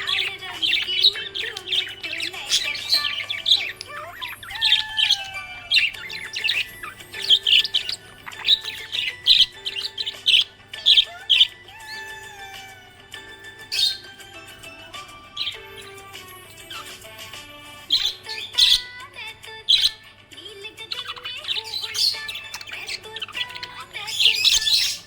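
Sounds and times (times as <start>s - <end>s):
budgie chirping and chattering: 0.0s - 25.0s.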